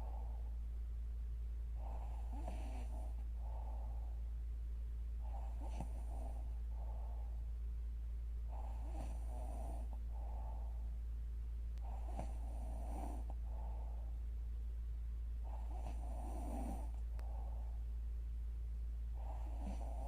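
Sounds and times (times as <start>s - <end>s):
steady low hum: 0.0s - 20.0s
woman snoring: 2.0s - 3.1s, 12.0s - 13.4s, 15.6s - 17.0s, 19.2s - 20.0s.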